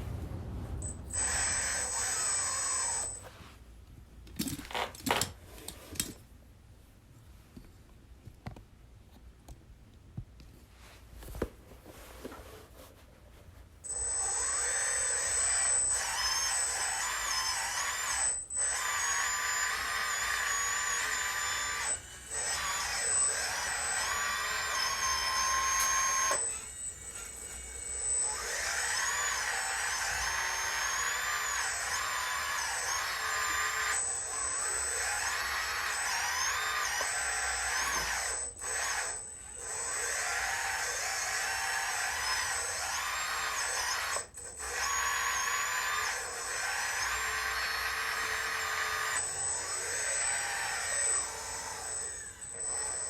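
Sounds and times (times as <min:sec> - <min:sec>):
high electric motor whine: 0:00.0 - 0:03.3, 0:13.9 - 0:53.0.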